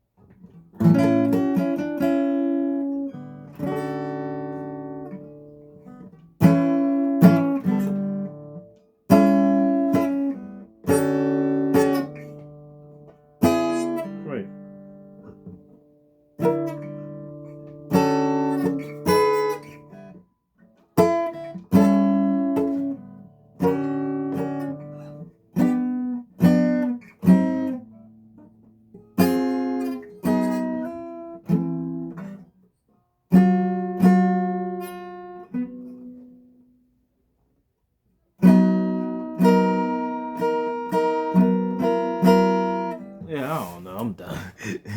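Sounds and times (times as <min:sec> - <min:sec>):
acoustic guitar chords strummed: 0:38.4 - 0:44.9.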